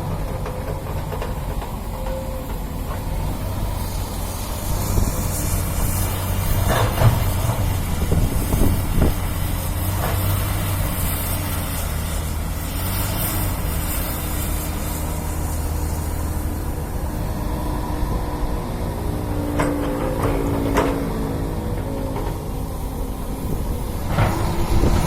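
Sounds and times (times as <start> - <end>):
excavator diesel engine running: 0.0 - 25.0
steady high whine: 13.6 - 25.0.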